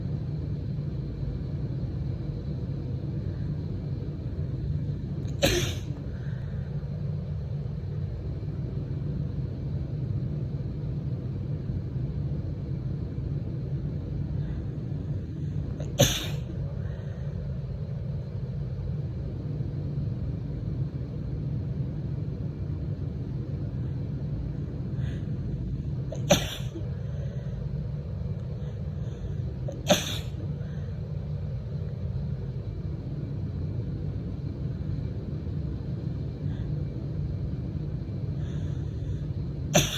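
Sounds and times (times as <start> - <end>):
woman sneezing: 5.4 - 6.0, 16.0 - 16.5, 26.2 - 26.9, 29.7 - 30.4.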